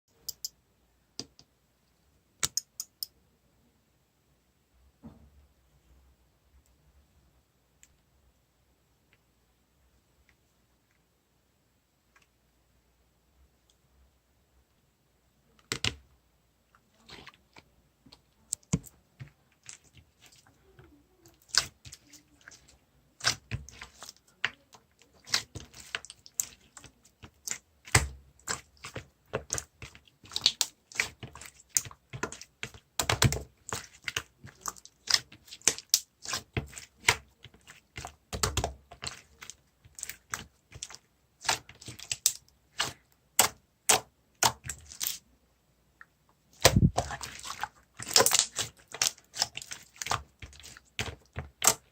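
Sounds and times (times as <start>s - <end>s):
slime clicking and popping: 38.3s - 39.3s, 48.0s - 51.9s
slime thuds: 46.6s - 51.9s.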